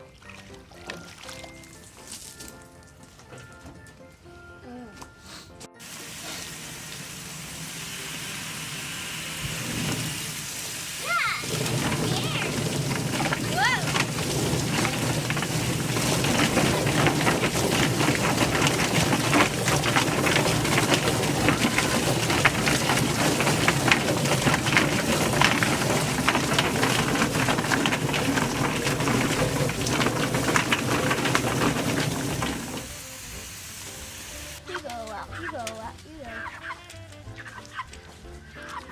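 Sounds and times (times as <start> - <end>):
small knocks: 11.4 - 33.0.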